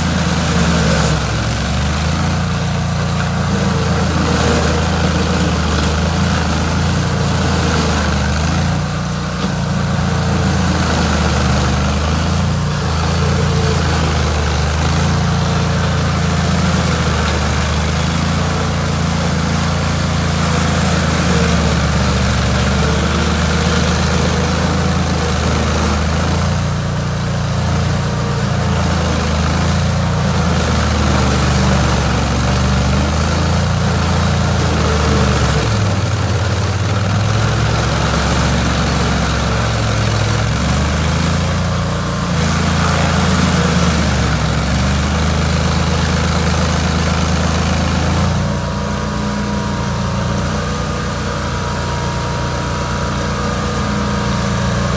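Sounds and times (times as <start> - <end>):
engine running at low revs: 0.0 - 54.9.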